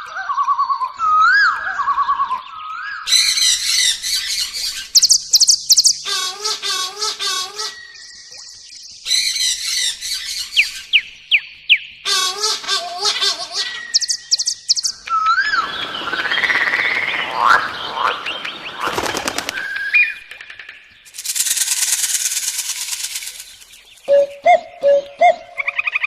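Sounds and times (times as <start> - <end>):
bird calls and chirps: 0.0 - 26.0
steady high hiss: 21.0 - 24.1.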